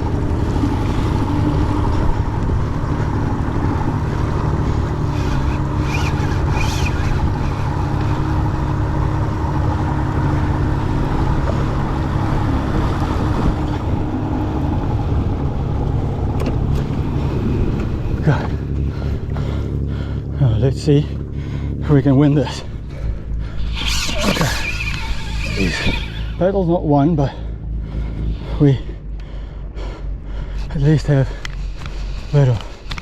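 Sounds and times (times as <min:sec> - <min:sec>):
small boat motor running: 0:00.0 - 0:33.0
water and wind noise: 0:00.0 - 0:33.0
faint high whine: 0:23.5 - 0:26.9.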